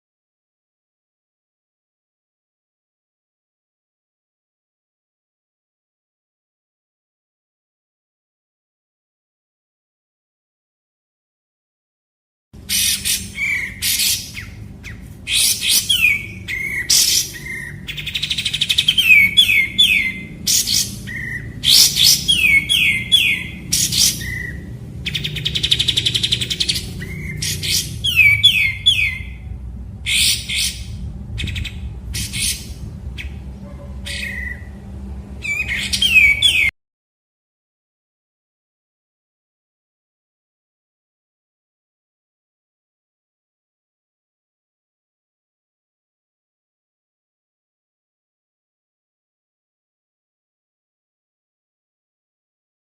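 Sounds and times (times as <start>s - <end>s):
songbird singing: 12.6s - 36.7s.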